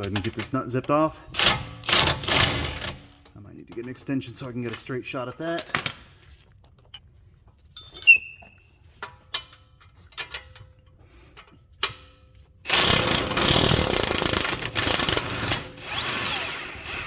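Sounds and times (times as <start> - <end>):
power tool running: 12.7 - 17.0.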